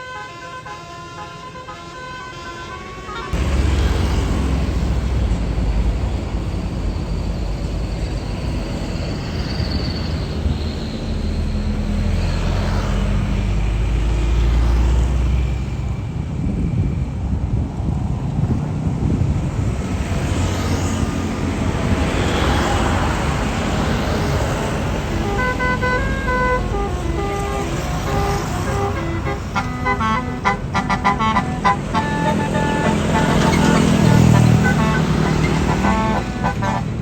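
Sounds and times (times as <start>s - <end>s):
musical bus horn tune: 0.0s - 3.5s, 24.7s - 37.0s
bus engine passing: 0.0s - 37.0s
wind buffeting microphone: 15.7s - 25.2s.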